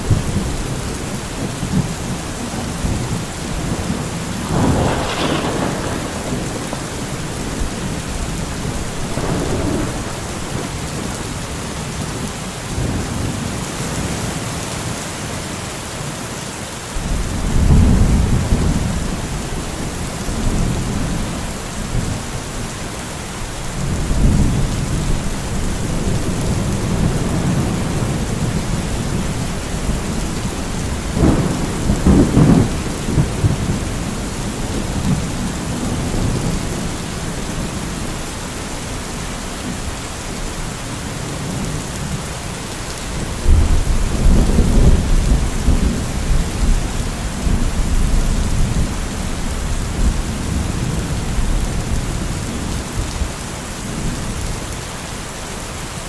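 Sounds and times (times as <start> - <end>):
rolling thunder: 0.0 - 14.3, 17.0 - 22.3, 23.7 - 38.4, 43.1 - 53.2
heavy rain hissing: 0.0 - 56.0
sharp crackling thunder peal: 2.8 - 14.2, 23.8 - 36.6, 43.4 - 52.8.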